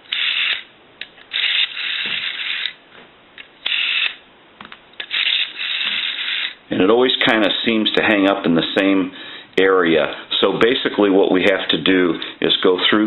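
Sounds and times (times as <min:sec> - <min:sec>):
rotary phone dial whirring: 0:00.1 - 0:00.7, 0:01.3 - 0:02.8, 0:03.6 - 0:04.2, 0:05.0 - 0:06.6.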